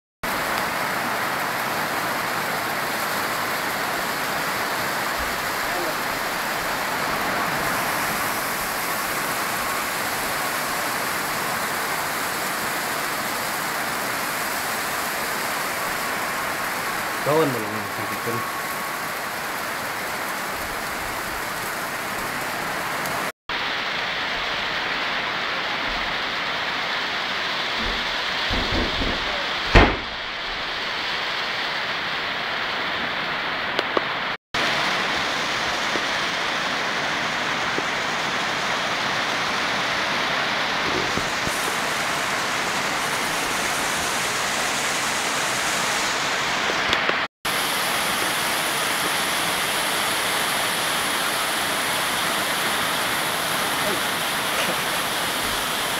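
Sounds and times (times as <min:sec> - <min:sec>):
heavy rain pouring: 0:00.2 - 0:55.9
loud thump: 0:27.8 - 0:30.6.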